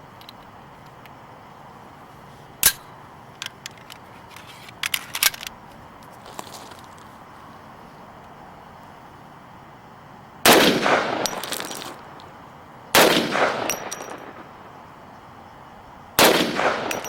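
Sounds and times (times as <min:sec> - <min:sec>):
loud gunshot: 0:10.5 - 0:11.4, 0:13.0 - 0:14.3, 0:16.2 - 0:17.0.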